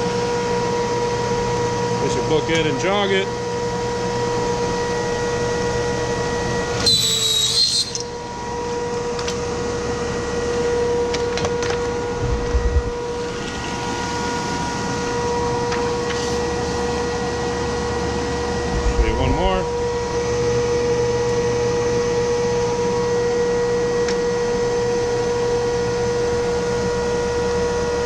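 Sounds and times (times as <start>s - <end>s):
machine humming: 11.9s - 15.7s, 17.9s - 20.8s
low thump: 18.6s - 19.8s.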